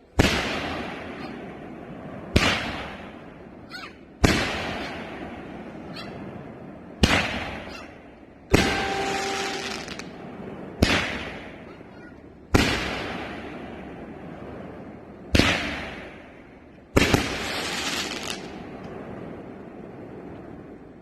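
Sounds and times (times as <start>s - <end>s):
firework bangs: 0.0s - 21.0s
long firework hiss: 8.5s - 11.6s, 12.6s - 20.8s.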